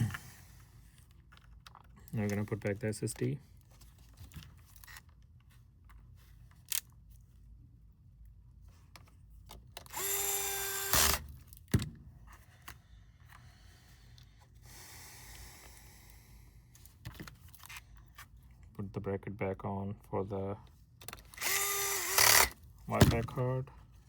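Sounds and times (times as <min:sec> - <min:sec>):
electric screwdriver running: 0:09.8 - 0:11.3, 0:21.4 - 0:22.6.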